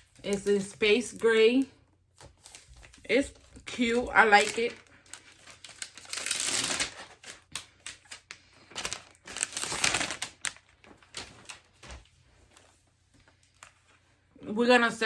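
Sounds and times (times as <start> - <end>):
packaging crinkling and rustling: 2.2 - 14.0.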